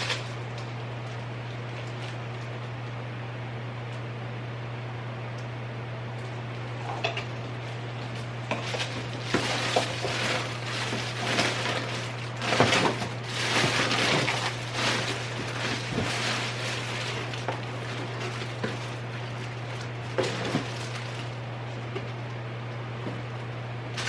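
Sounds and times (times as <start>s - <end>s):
steady low hum: 0.0s - 24.0s
rustling and scraping: 7.5s - 22.2s.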